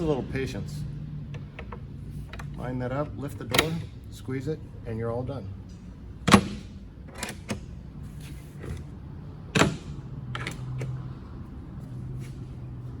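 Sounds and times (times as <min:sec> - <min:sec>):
cabinet door hardware clicking: 0:06.2 - 0:07.7, 0:09.6 - 0:11.0.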